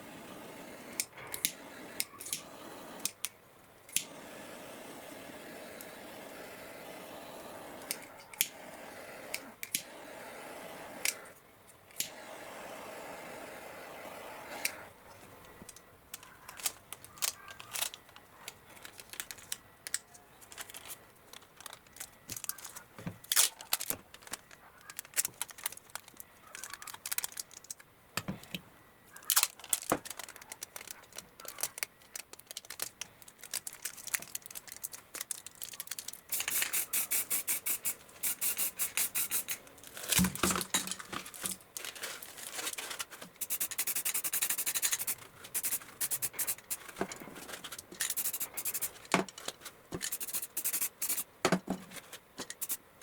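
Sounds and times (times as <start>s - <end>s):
handling clicks and taps: 51.4s - 52.6s.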